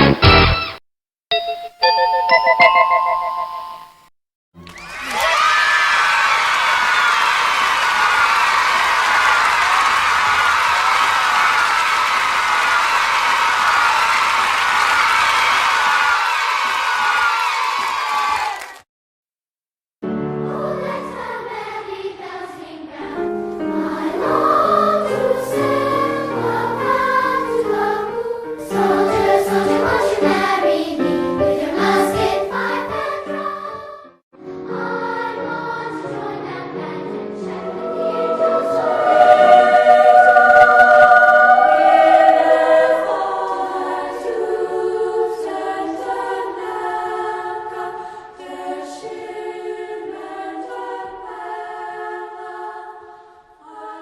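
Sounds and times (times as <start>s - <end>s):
choir singing sustained chords: 20.4s - 34.0s, 34.6s - 54.0s.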